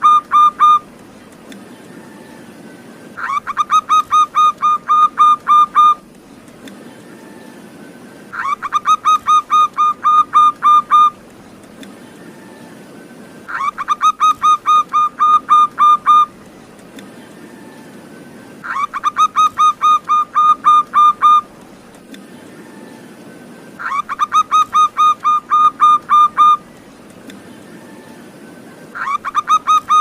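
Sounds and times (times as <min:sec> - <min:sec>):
dove cooing: 0:00.0 - 0:01.0, 0:03.2 - 0:06.1, 0:08.3 - 0:11.3, 0:13.5 - 0:16.4, 0:18.6 - 0:21.6, 0:23.8 - 0:26.7, 0:28.9 - 0:30.0.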